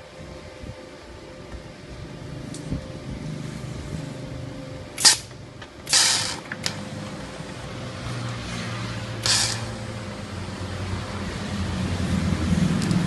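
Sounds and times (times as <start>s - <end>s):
welder hum: 0.0s - 13.0s
welding torch hissing: 2.0s - 11.8s.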